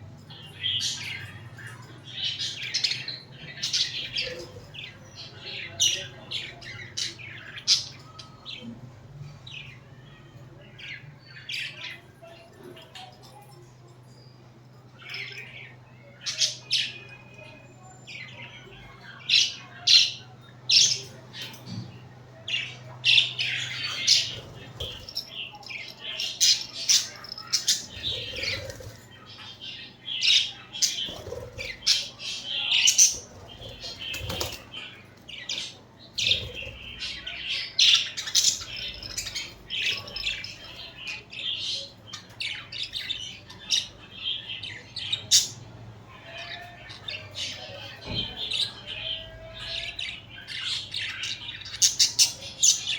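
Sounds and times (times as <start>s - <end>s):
faint low hum: 0.0s - 52.9s
budgerigars chirping and squawking: 22.6s - 52.9s.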